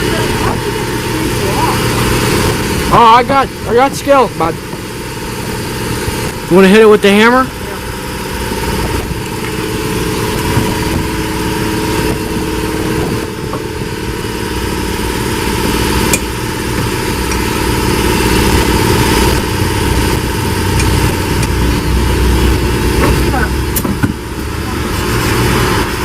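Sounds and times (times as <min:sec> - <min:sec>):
small engine idling: 0:00.0 - 0:26.0.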